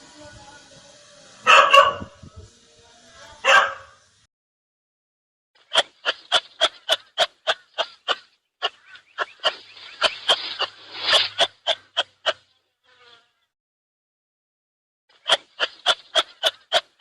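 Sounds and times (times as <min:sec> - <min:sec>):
animal short sharp calls: 0:05.7 - 0:12.4.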